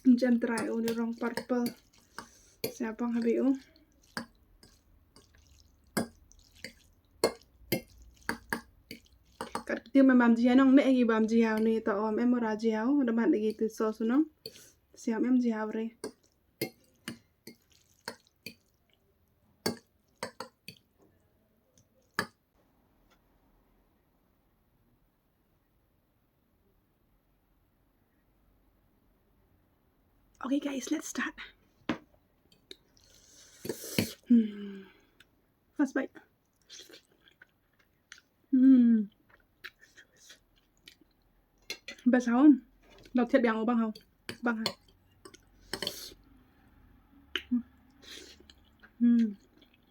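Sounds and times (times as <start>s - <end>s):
person chewing: 0.6s - 9.7s, 16.0s - 19.0s, 36.4s - 38.3s, 39.1s - 42.0s, 44.0s - 46.3s, 47.3s - 49.9s.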